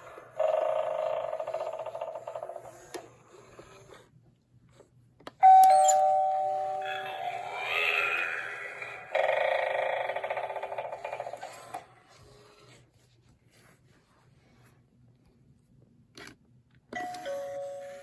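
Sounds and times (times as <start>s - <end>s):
rattling electronic sound effect: 6.8s - 11.7s.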